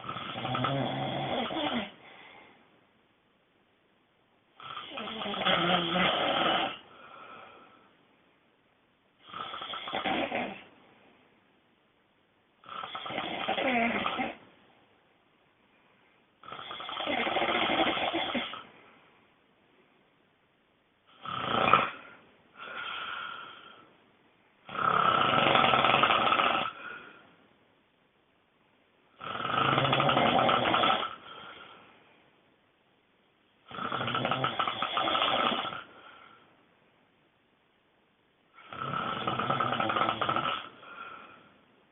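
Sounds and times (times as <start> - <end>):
person snoring loudly: 0.0 - 2.0, 4.6 - 7.1, 9.2 - 10.7, 12.6 - 14.4, 16.4 - 18.6, 21.1 - 23.8, 24.6 - 27.0, 29.2 - 31.4, 33.7 - 35.9, 38.6 - 41.0.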